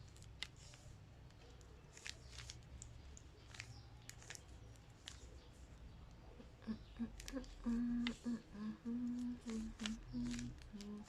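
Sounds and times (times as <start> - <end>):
low steady hum: 0.0 - 11.0
plastic puzzle cube clicking: 2.0 - 5.3.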